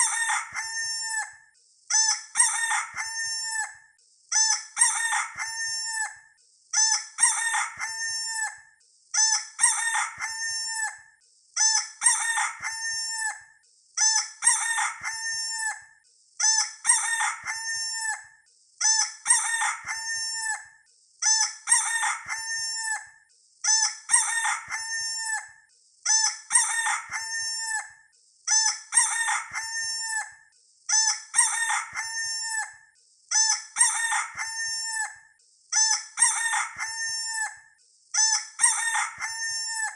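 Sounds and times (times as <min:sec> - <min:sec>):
rooster crowing: 0:00.0 - 0:01.4, 0:02.4 - 0:03.8, 0:04.8 - 0:06.2, 0:07.2 - 0:08.6, 0:09.6 - 0:11.0, 0:12.0 - 0:13.4, 0:14.4 - 0:15.8, 0:16.9 - 0:18.3, 0:19.3 - 0:20.8, 0:21.7 - 0:23.1, 0:24.1 - 0:25.6, 0:26.5 - 0:27.9, 0:28.9 - 0:30.4, 0:31.4 - 0:32.8, 0:33.8 - 0:35.2, 0:36.2 - 0:37.6, 0:38.6 - 0:39.9.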